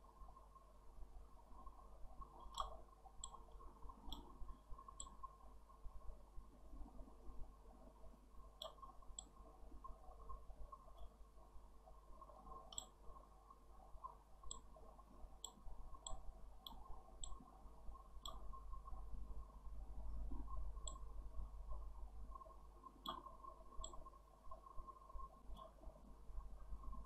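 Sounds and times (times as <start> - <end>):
faint low hum: 0.0 - 27.0
computer mouse clicking: 2.2 - 5.4, 8.6 - 10.0, 12.4 - 13.0, 14.0 - 14.8, 15.4 - 17.6, 18.2 - 19.1, 19.9 - 21.2, 21.8 - 24.6, 25.4 - 26.0.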